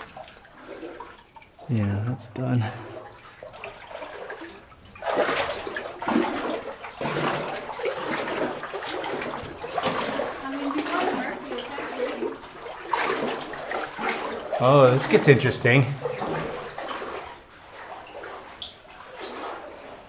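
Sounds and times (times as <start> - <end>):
people wading through water: 0.0 - 20.0.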